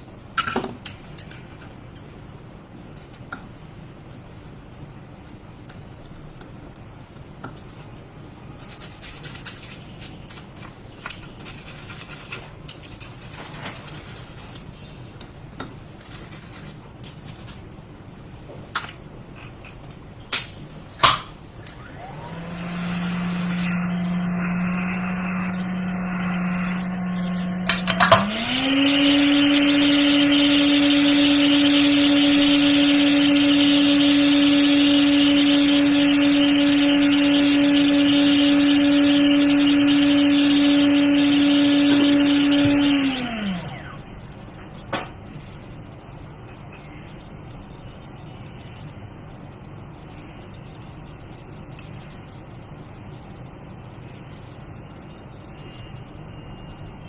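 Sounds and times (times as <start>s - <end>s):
hot air blower humming: 21.0s - 44.4s
tools clicking and tapping: 27.6s - 28.4s.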